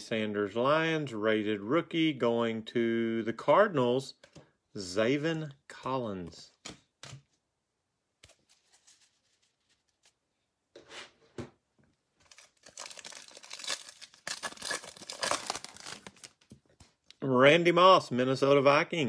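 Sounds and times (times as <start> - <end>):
soft handling sounds: 8.2 - 12.8
wrapper tearing and crinkling: 12.2 - 16.6.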